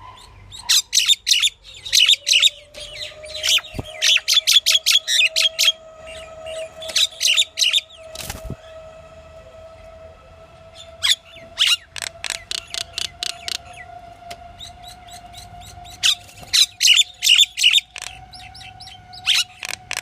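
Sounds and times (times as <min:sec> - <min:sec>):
bird chirping high and sharp: 0:00.5 - 0:08.1, 0:14.6 - 0:20.0
faint steady whistling tone: 0:01.1 - 0:20.0.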